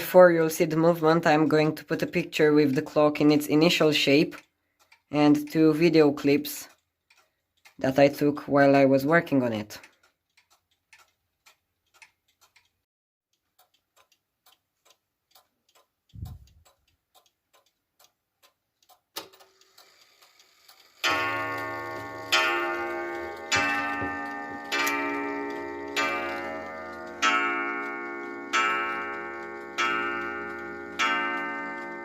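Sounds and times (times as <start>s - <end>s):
wall clock ticking: 0.0s - 32.0s
clock click: 0.5s - 32.0s
clock striking on coil gong: 21.0s - 32.0s.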